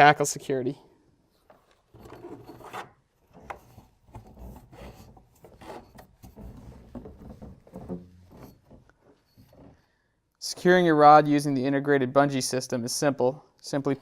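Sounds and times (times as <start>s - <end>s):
plastic crate rubbing and scraping: 2.0s - 9.8s.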